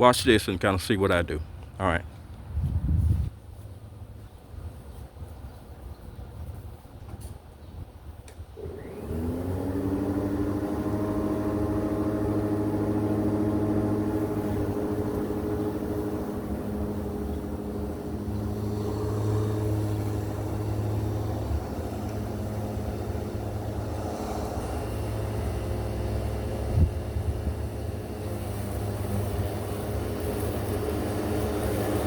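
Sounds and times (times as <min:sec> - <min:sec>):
electric lawnmower running: 0:08.6 - 0:32.0.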